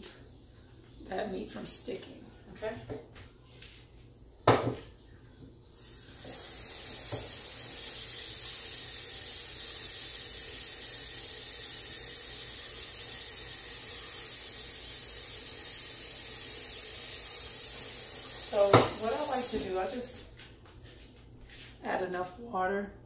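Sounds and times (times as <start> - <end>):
tap water running into pot: 5.8 - 19.8.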